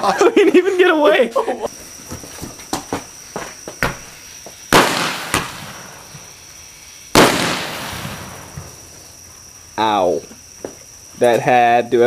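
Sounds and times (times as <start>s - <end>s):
crickets chirping: 0.0s - 12.0s
firecracker bangs: 3.8s - 6.4s, 7.1s - 9.0s.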